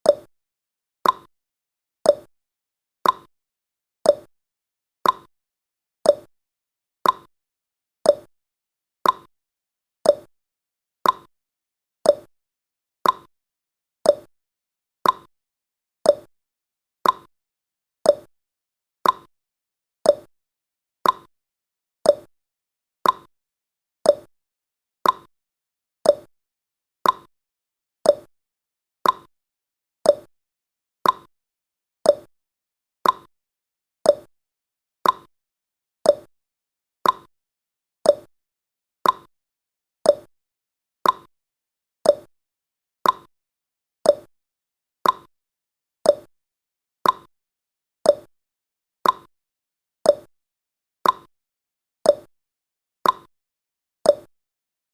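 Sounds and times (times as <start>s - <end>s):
clock tick-tock: 0.0s - 0.3s, 1.0s - 1.3s, 2.1s - 2.3s, 3.0s - 3.3s, 4.1s - 4.3s, 5.0s - 5.3s, 6.1s - 6.3s, 7.0s - 7.3s, 8.1s - 8.3s, 9.0s - 9.3s, 10.0s - 10.3s, 11.0s - 11.3s, 12.1s - 12.3s, 13.0s - 13.3s, 14.0s - 14.3s, 15.0s - 15.3s, 16.0s - 16.3s, 17.0s - 17.3s, 18.0s - 18.3s, 19.0s - 19.3s, 20.0s - 20.3s, 21.0s - 21.3s, 22.0s - 22.3s, 23.0s - 23.3s, 24.0s - 24.3s, 25.0s - 25.3s, 26.0s - 26.3s, 27.0s - 27.3s, 28.0s - 28.3s, 29.0s - 29.3s, 30.0s - 30.3s, 31.0s - 31.3s, 32.0s - 32.3s, 33.0s - 33.3s, 34.0s - 34.3s, 35.0s - 35.3s, 36.0s - 36.3s, 37.0s - 37.3s, 38.0s - 38.3s, 39.0s - 39.3s, 40.0s - 40.3s, 41.0s - 41.3s, 42.0s - 42.3s, 43.0s - 43.3s, 44.0s - 44.3s, 45.0s - 45.3s, 46.0s - 46.3s, 47.0s - 47.3s, 48.0s - 48.3s, 49.0s - 49.3s, 50.1s - 50.3s, 51.0s - 51.3s, 52.1s - 52.3s, 53.0s - 53.3s, 54.1s - 54.3s.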